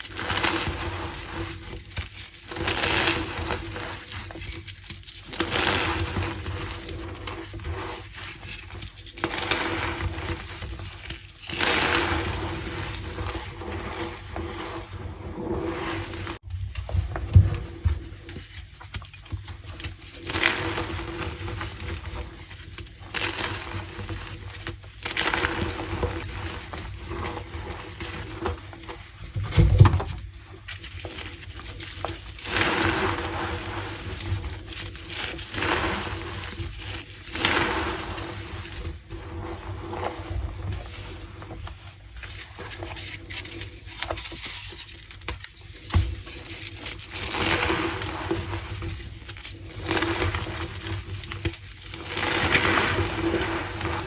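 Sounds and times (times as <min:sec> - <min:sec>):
chalk crunching and squeaking: 0:00.0 - 0:16.4.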